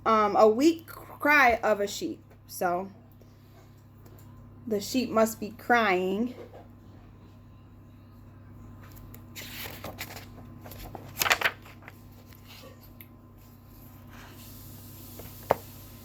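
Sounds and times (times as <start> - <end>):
paper rustling: 8.8 - 13.0.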